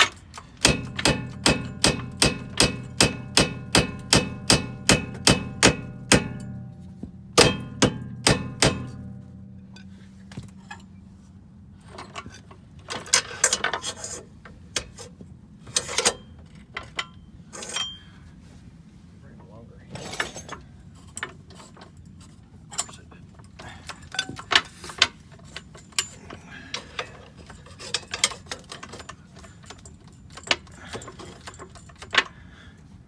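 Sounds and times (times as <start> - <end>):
metal clanks and rattles: 0.0 - 15.0
hammer blows on steel: 0.6 - 11.0.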